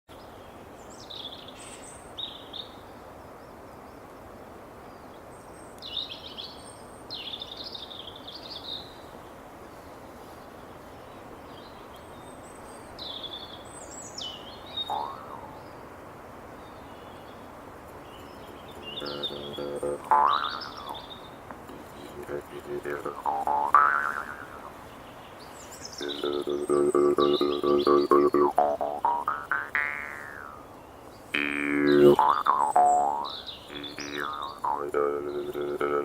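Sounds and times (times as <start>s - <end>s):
wind in trees: 0.1s - 36.0s
songbirds chirping: 4.9s - 36.0s.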